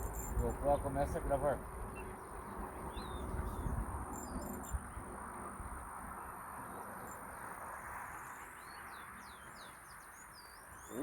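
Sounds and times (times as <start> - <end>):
insect trill: 0.0 - 1.0
bird chirps: 8.6 - 11.0.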